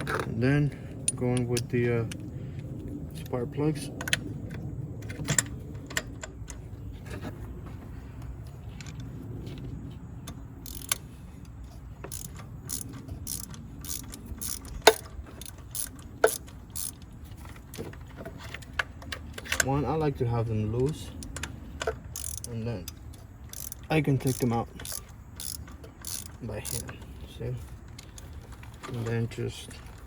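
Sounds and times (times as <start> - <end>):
socket ratchet clicking: 10.6 - 11.0, 12.0 - 17.1, 21.2 - 26.9.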